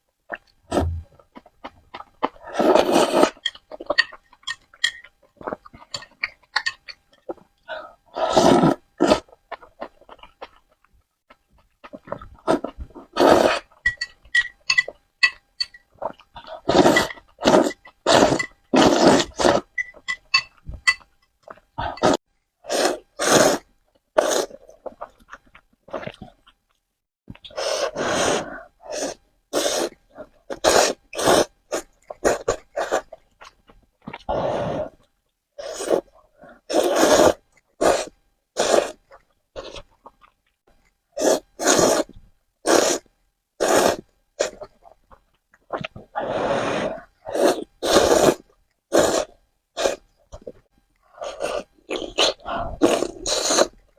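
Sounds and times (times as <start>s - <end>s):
noodles slurped: 0.3s - 4.6s, 8.1s - 10.6s, 11.8s - 13.8s, 16.0s - 19.8s, 21.5s - 26.6s, 27.4s - 40.4s, 41.2s - 44.9s, 45.6s - 53.8s
chewing and mouth sounds: 0.3s - 7.6s, 8.6s - 22.2s, 23.6s - 27.6s, 29.9s - 35.2s, 35.8s - 42.2s, 44.4s - 46.2s, 47.3s - 53.9s.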